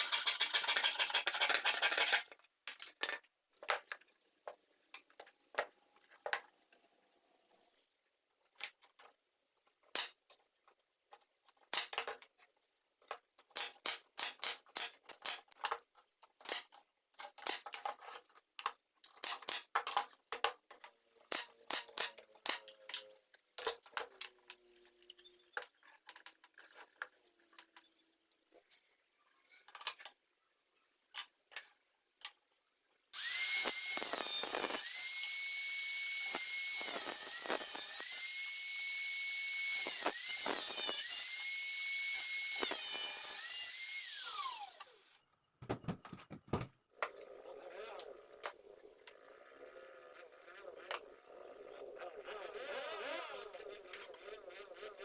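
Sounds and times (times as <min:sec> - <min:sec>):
small power tool whining: 0:33.1 - 0:45.2, 0:47.2 - 0:55.0
sharp clicks and metallic knocks: 0:45.6 - 0:46.8.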